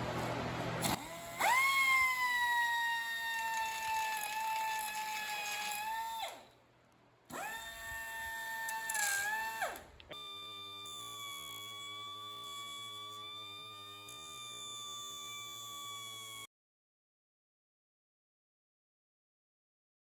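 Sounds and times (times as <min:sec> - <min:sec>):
angle grinder whining: 0:00.8 - 0:06.6, 0:07.3 - 0:16.5.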